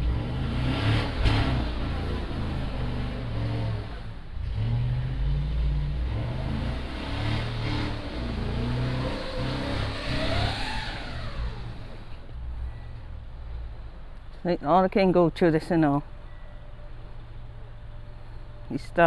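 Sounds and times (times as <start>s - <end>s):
vehicle engine revving: 0.0s - 14.3s
rising whine: 6.2s - 13.0s.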